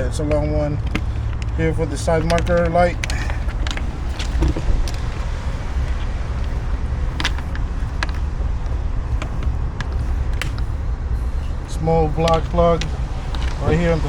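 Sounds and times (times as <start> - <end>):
steady low rumble: 0.0 - 14.0
plastic connectors clicking: 0.3 - 10.7.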